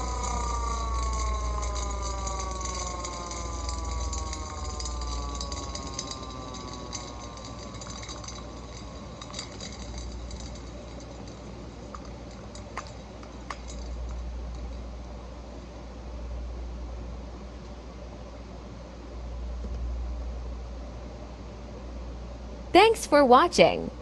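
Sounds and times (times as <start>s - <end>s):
hand crank siren winding down: 0.0s - 10.7s
steady low hum: 0.0s - 24.0s.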